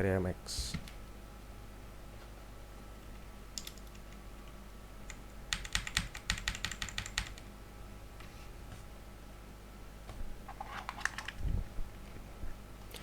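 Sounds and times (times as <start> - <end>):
mechanical keyboard keystrokes: 3.6 - 4.0, 5.5 - 7.4, 10.8 - 11.4.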